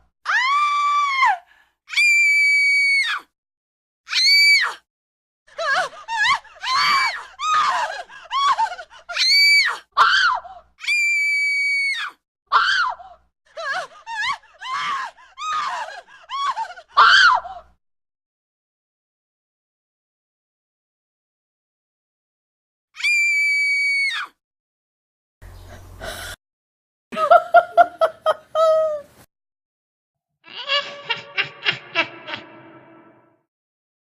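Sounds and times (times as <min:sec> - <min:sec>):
high-pitched human screams: 0:23.0 - 0:24.3.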